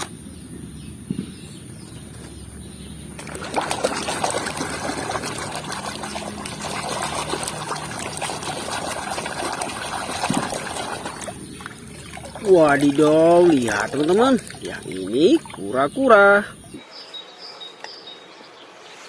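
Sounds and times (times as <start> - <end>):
water running and spattering: 3.2 - 16.4.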